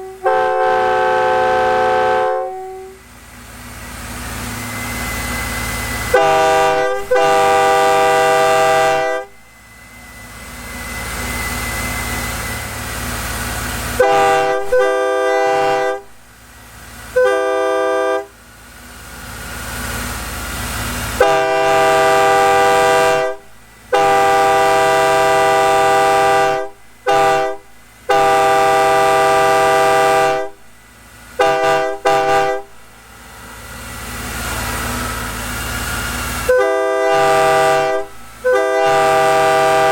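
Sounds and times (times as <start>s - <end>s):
locomotive air horn blasts: 0.0s - 3.1s, 5.8s - 9.5s, 13.8s - 16.2s, 17.1s - 18.4s, 21.1s - 30.6s, 31.4s - 32.8s, 36.4s - 39.9s.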